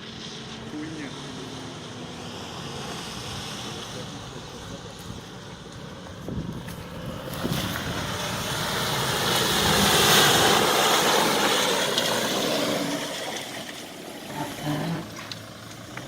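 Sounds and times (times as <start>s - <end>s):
water rushing: 7.3s - 16.0s.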